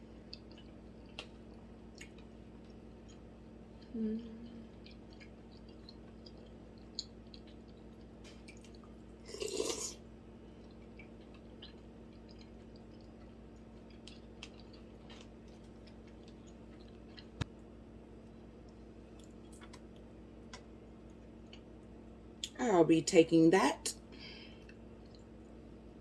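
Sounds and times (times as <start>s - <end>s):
mouth chewing: 0.2s - 3.9s, 4.6s - 9.9s, 10.6s - 17.4s.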